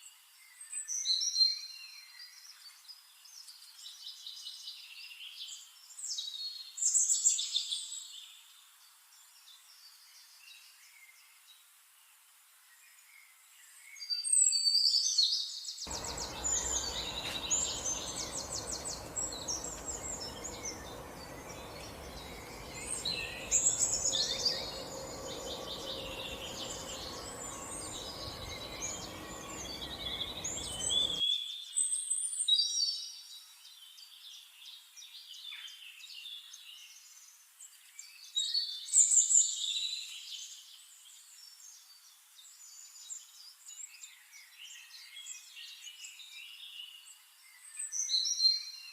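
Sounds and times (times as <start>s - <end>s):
songbirds chirping and trilling: 15.9s - 31.2s
stream babbling: 15.9s - 31.2s.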